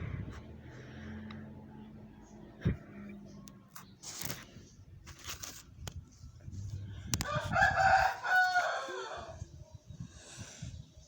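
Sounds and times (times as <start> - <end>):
rooster crowing: 7.2 - 9.4.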